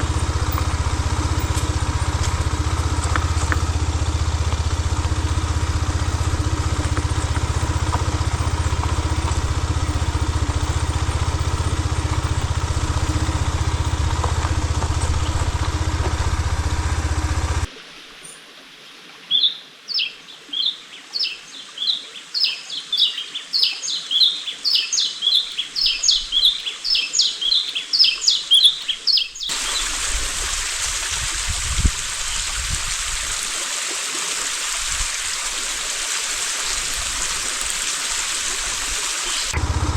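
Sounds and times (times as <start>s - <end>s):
motorcycle engine running: 0.0s - 17.7s, 38.6s - 39.9s
stream rushing: 0.0s - 17.7s, 29.5s - 39.9s
bird chirping: 19.4s - 29.6s.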